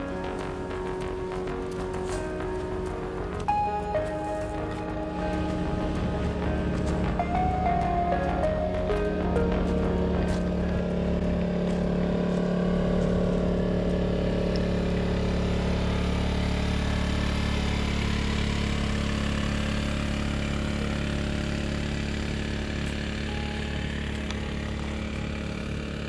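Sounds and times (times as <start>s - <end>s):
engine running steadily: 0.0s - 26.0s.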